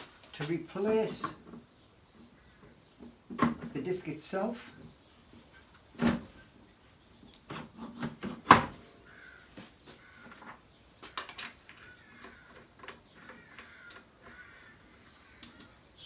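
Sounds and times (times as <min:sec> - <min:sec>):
sander parts clicking and knocking: 0:10.3 - 0:14.6.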